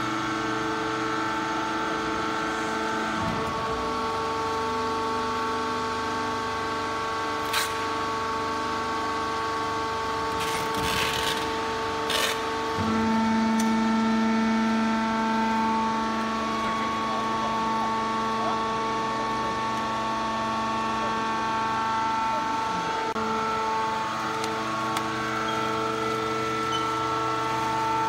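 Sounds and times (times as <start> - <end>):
baler machine humming: 11.6 - 28.0.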